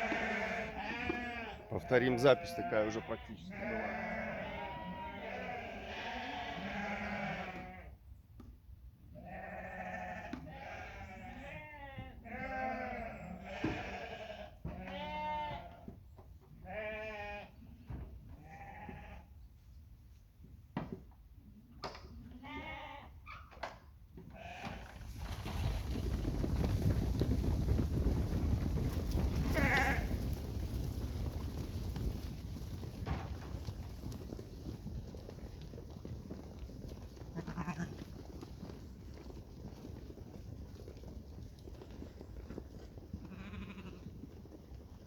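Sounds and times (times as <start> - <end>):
sheep bleating: 0.0 - 7.9, 9.2 - 15.8, 16.7 - 17.5, 18.4 - 19.2, 22.3 - 23.1, 29.5 - 30.1, 37.4 - 38.0, 43.3 - 44.0.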